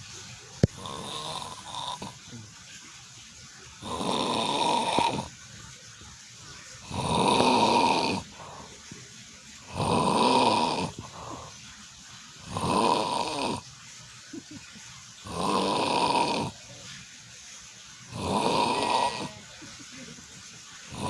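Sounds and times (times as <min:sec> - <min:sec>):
cat snoring: 0:00.7 - 0:02.1, 0:03.8 - 0:05.3, 0:06.8 - 0:08.6, 0:09.7 - 0:11.5, 0:12.4 - 0:13.6, 0:15.2 - 0:16.6, 0:18.1 - 0:19.4.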